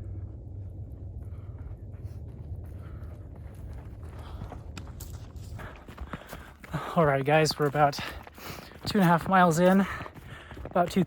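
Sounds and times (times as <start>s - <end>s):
low rumble on microphone: 0.0s - 6.9s
footsteps crunching on snow: 0.7s - 11.0s.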